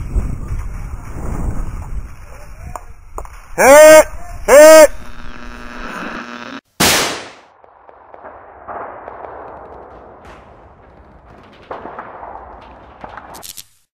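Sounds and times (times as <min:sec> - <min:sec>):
loud sharp bang: 0:06.8 - 0:13.4.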